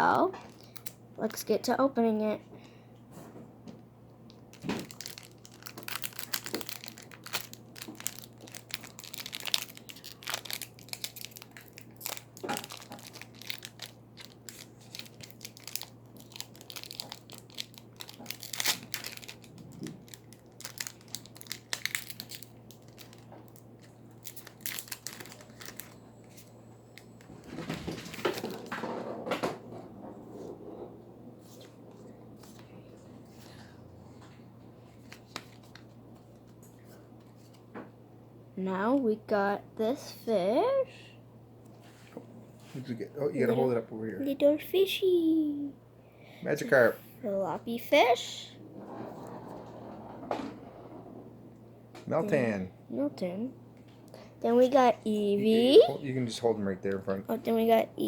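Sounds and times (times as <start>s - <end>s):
packaging torn and crinkled: 0.5s - 1.0s, 4.5s - 27.3s.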